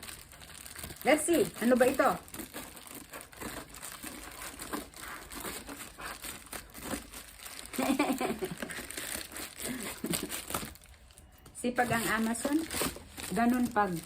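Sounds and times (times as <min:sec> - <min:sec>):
packaging crinkling and rustling: 0:00.0 - 0:14.0.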